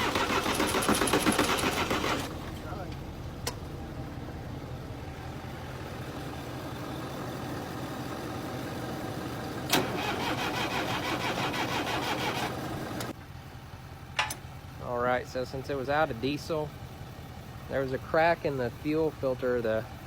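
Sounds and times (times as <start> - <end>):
diesel engine cranking: 0.0 - 20.0
sharp click: 14.2 - 14.4.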